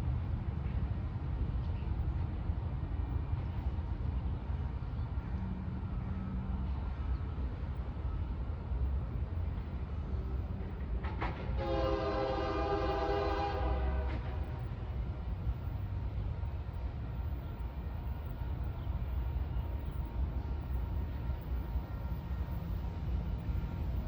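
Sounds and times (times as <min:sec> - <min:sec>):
low rumble of train: 0:00.0 - 0:24.0
locomotive air horn blast: 0:11.6 - 0:14.6.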